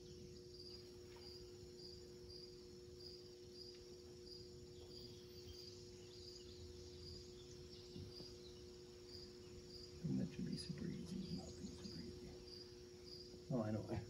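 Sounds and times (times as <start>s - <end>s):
cricket chirping: 0.0s - 14.0s
low steady hum: 0.0s - 14.0s.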